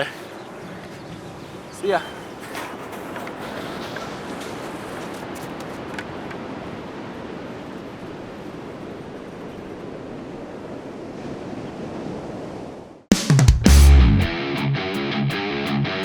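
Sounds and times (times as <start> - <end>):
ocean surf breaking waves: 0.0 - 13.1.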